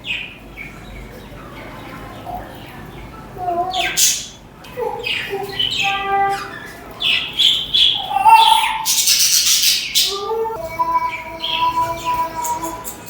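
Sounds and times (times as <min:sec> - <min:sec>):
budgerigars chirping and warbling: 0:00.0 - 0:13.0
harsh raspy bird chatter: 0:00.1 - 0:13.0.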